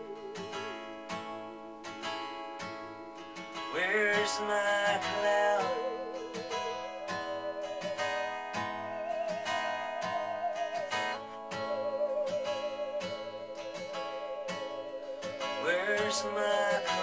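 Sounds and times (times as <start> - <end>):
acoustic guitar strumming: 0.0 - 17.0
musical saw melody with vibrato: 5.7 - 17.0.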